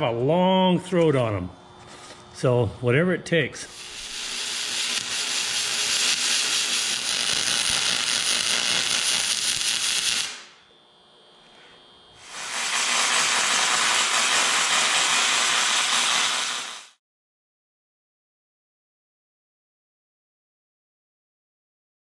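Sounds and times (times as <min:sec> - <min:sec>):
welding arc crackling hiss: 0:03.6 - 0:10.6, 0:12.2 - 0:17.0.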